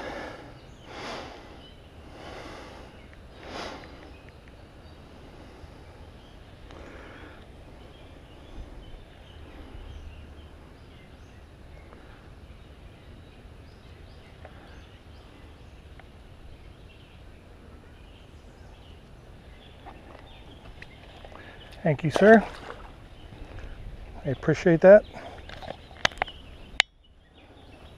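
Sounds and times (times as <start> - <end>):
wind rumble on microphone: 22.5 - 24.5.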